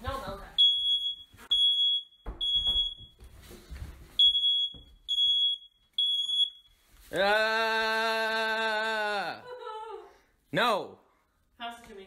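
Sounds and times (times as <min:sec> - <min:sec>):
smoke alarm shrill beeps: 0:00.6 - 0:03.2, 0:04.2 - 0:06.8.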